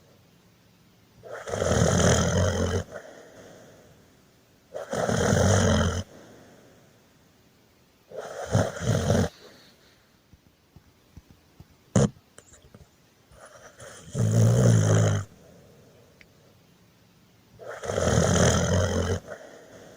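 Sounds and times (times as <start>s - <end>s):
loud rattling snores: 1.2s - 3.8s, 4.7s - 6.1s, 8.1s - 9.5s, 12.0s - 12.2s, 13.4s - 15.4s, 17.6s - 19.9s.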